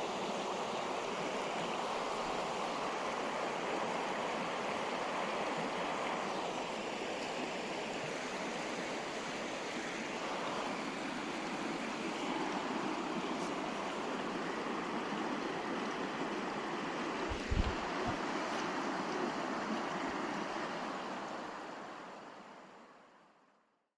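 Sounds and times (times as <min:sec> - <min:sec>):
river water flowing: 0:00.0 - 0:23.6
low thump: 0:17.3 - 0:18.2.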